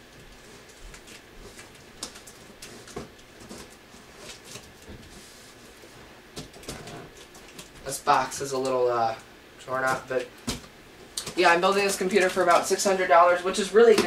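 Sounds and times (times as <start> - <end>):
cardboard rustling and scraping: 0.2 - 8.7.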